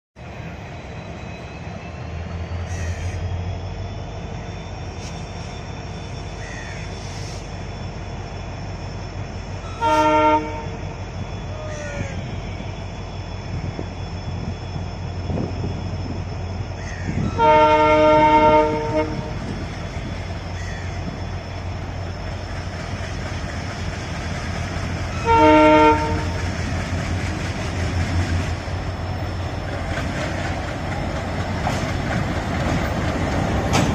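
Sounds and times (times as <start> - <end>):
train rail noise: 0.2 - 33.9
train horn blasts: 9.6 - 11.0, 17.2 - 19.6, 25.1 - 26.5.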